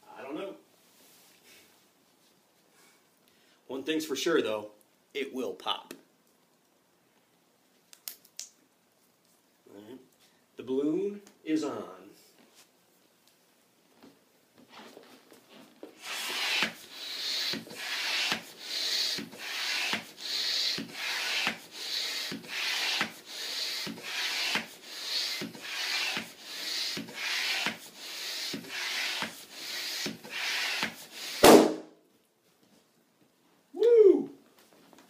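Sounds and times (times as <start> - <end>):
balloon pump air rush: 16.0 - 31.8.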